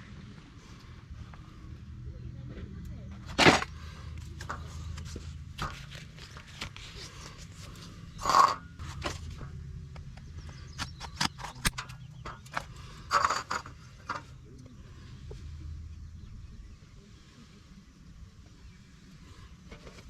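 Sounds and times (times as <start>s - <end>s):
low background hum: 0.0s - 20.0s
scrapes and clicks: 2.7s - 15.6s.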